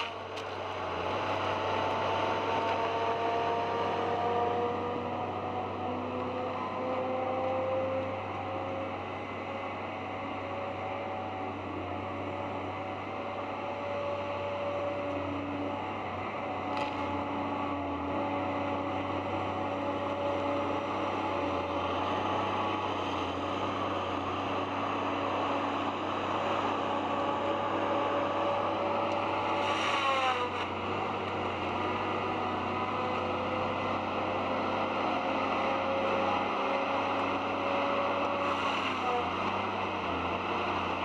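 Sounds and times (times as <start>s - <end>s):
heavy machine engine running: 14.7s - 41.0s.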